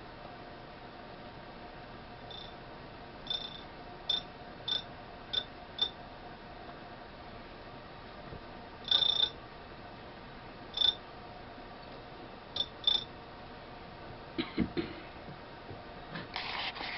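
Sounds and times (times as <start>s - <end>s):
grinding wheel high-pitched chirps: 2.3s - 2.6s, 3.2s - 6.0s, 8.8s - 9.4s, 10.7s - 11.0s, 12.6s - 13.1s.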